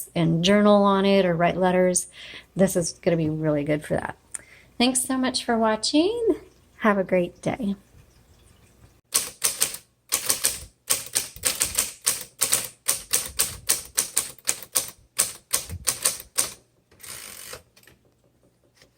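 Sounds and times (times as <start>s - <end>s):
typewriter keys typing: 9.1s - 17.9s.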